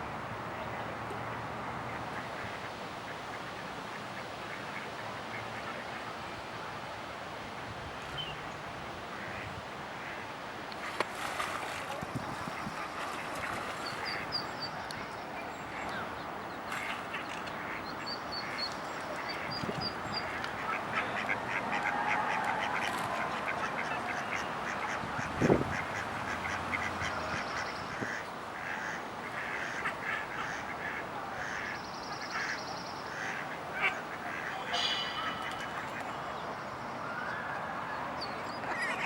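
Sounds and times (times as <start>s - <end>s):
ducklings peeping: 34.4s - 36.5s.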